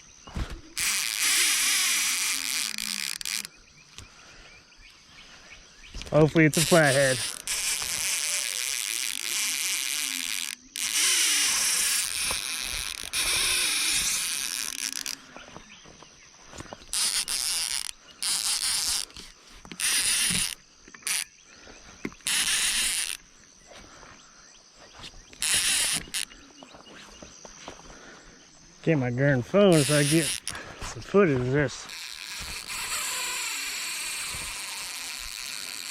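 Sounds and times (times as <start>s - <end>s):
fishing reel drag buzzing: 0.8s - 4.0s, 6.1s - 15.3s, 16.9s - 21.3s, 22.1s - 23.2s, 25.3s - 26.4s, 29.7s - 35.9s.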